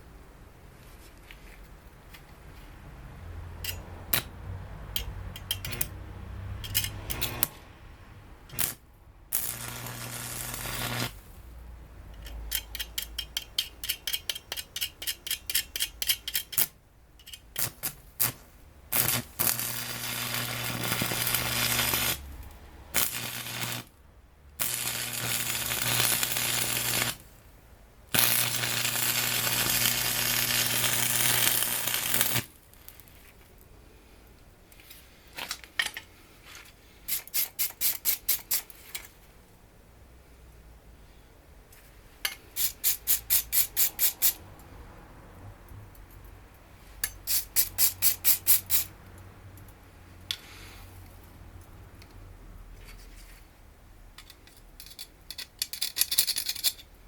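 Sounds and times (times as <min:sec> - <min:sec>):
steady hum: 0:06.7 - 0:13.4
welding arc crackling and buzzing: 0:06.8 - 0:07.6, 0:08.5 - 0:11.4, 0:17.6 - 0:23.9, 0:24.6 - 0:27.4, 0:28.1 - 0:33.1.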